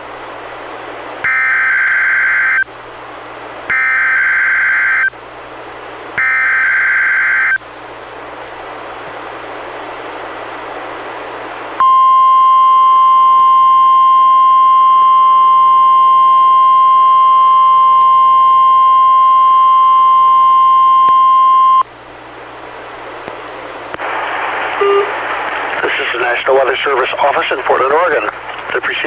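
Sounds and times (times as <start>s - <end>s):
high warning alarm tone: 1.2s - 2.7s, 3.7s - 5.1s, 6.2s - 7.6s, 11.8s - 21.8s, 24.8s - 25.1s
radio hiss: 23.9s - 29.0s.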